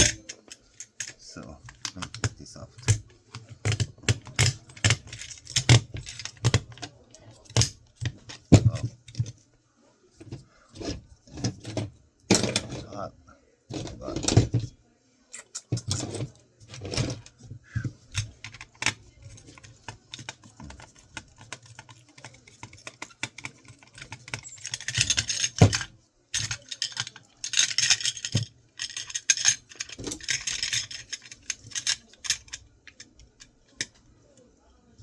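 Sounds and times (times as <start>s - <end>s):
clicks and rattles of parts handled: 0.0s - 9.4s, 10.2s - 12.9s, 13.7s - 14.8s, 15.4s - 34.0s
scraping: 15.4s - 34.0s.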